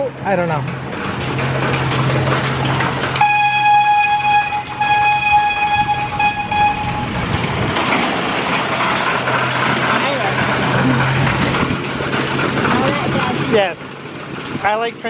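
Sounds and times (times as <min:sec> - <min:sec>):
train running noise: 0:00.0 - 0:15.0
ride train horn blasts: 0:03.2 - 0:07.6.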